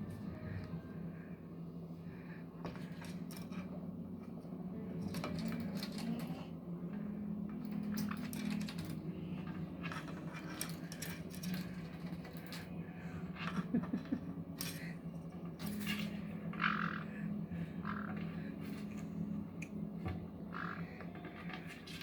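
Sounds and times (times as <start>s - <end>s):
steady low hum: 0.0s - 22.0s
light clicks and scratches: 5.0s - 6.6s, 7.6s - 12.8s.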